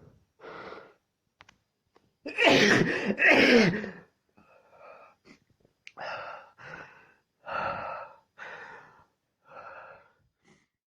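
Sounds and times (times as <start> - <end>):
man breathing heavily: 0.4 - 1.0, 3.8 - 10.8.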